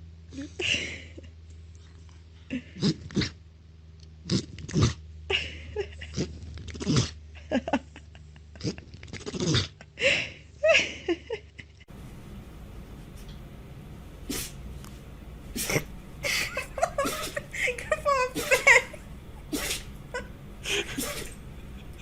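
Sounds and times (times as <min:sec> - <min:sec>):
pets sneezing: 0:14.2 - 0:14.7, 0:15.4 - 0:22.0.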